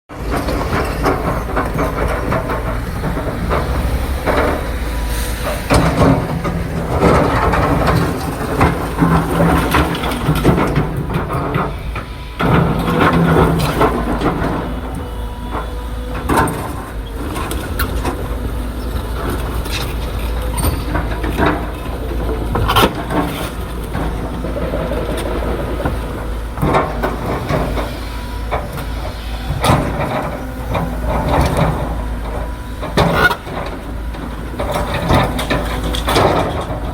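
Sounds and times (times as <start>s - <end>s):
excavator diesel engine running: 0.1s - 36.9s.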